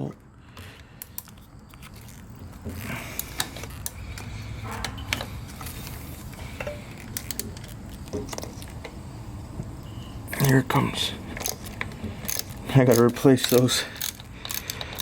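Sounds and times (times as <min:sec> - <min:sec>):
ratchet metal clicks: 0:06.6 - 0:08.7, 0:11.4 - 0:15.0.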